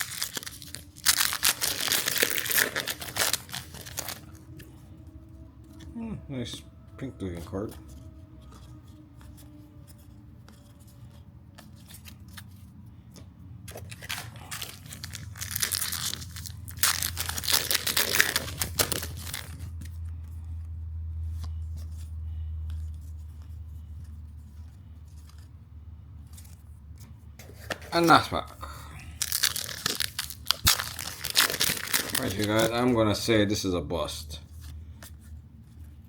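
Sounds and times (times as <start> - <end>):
wrapper tearing: 0.0 - 4.6, 13.7 - 19.9, 29.1 - 33.0
cards and wrappers rustling: 0.0 - 36.0.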